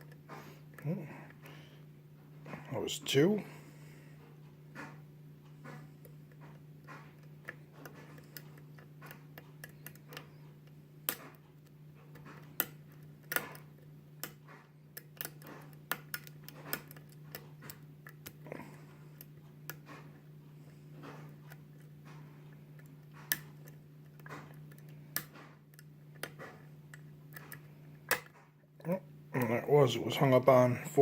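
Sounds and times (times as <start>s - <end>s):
steady low hum: 0.0s - 31.0s
lock pick ticking and clicking: 15.0s - 18.4s.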